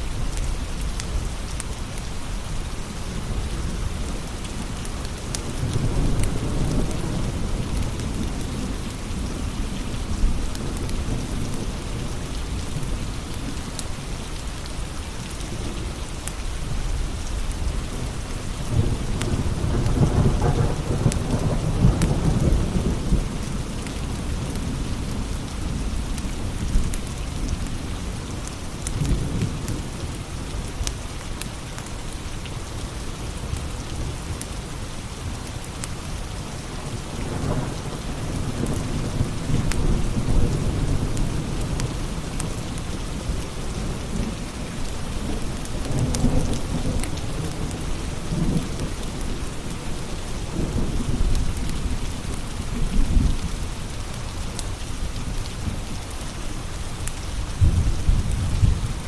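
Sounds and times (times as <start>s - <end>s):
steady rain: 0.0s - 59.0s
thunder rolling: 18.7s - 23.2s, 57.6s - 59.0s.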